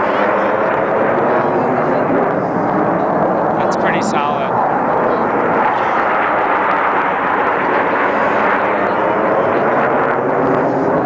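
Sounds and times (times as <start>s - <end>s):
jet engines roaring overhead: 0.0s - 11.0s.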